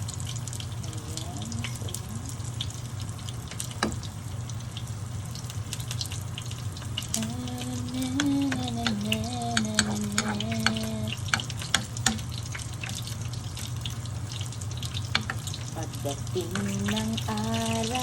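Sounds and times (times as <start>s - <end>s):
low hum: 0.0s - 18.0s
running splashing water: 0.0s - 18.0s
small clicks and knocks: 8.2s - 13.0s, 15.1s - 15.5s.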